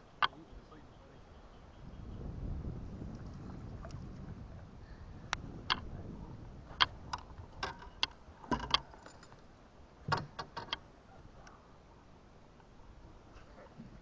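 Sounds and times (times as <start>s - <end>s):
light metallic clicks of fishing gear: 6.8s - 9.5s.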